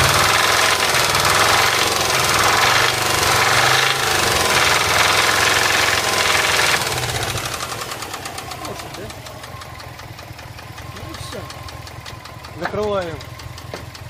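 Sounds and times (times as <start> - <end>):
engine running with rapid knock: 0.0 - 14.0.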